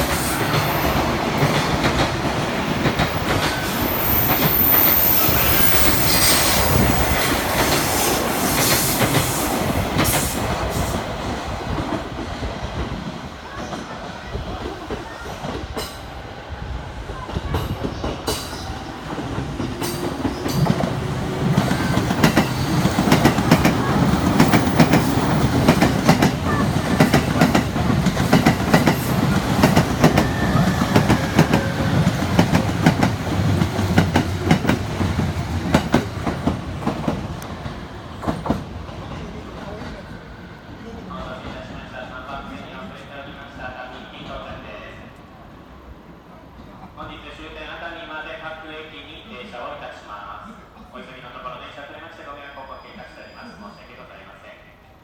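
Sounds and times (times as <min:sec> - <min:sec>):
wheels clickety-clack on rail joints: 0:00.0 - 0:11.0, 0:17.3 - 0:40.1
train rumble: 0:00.0 - 0:42.6.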